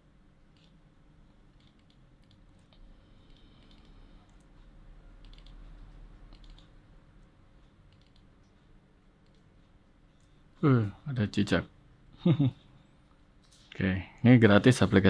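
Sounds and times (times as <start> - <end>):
low steady hum: 0.0 - 15.0
mouse and keyboard clicks: 1.5 - 4.5, 5.2 - 6.8, 7.9 - 8.3.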